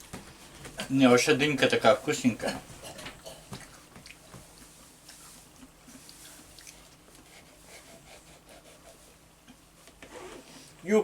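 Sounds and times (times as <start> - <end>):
faint chewing: 2.7 - 7.6.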